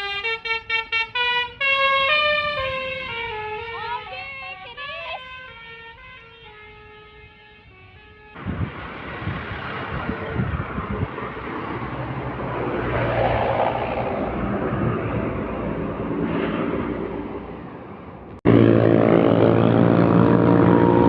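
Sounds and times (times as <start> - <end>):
multi-tone bus horn melody: 0.0 - 8.5, 18.4 - 21.0
bus passing: 0.0 - 21.0.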